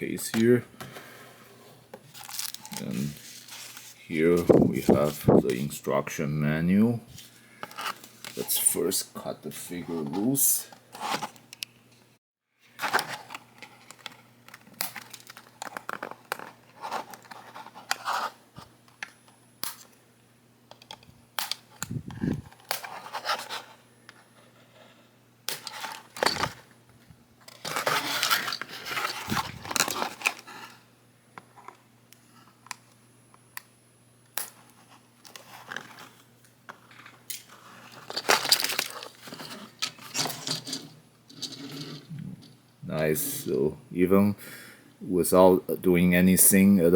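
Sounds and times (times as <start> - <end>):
packaging rustling: 2.0 - 5.2, 27.4 - 30.8, 36.9 - 40.8
plastic packaging crinkling and tearing: 2.1 - 4.0, 27.5 - 30.8, 37.5 - 40.2.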